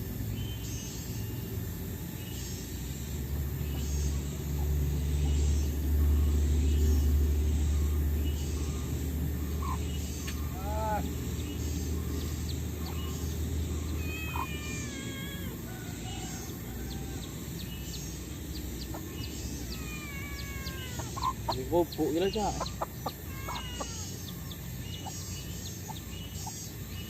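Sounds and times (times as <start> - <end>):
animal calls: 7.8 - 26.8.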